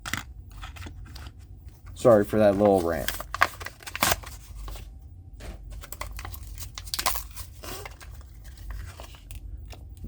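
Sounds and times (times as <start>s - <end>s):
cardboard and plastic tearing: 2.5s - 4.6s, 5.8s - 9.4s.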